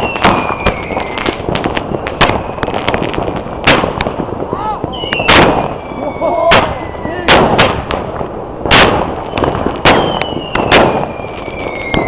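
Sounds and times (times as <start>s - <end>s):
falling firework whistle: 0.0s - 2.8s, 4.9s - 7.4s, 9.1s - 12.0s
fireworks bangs: 0.0s - 12.0s.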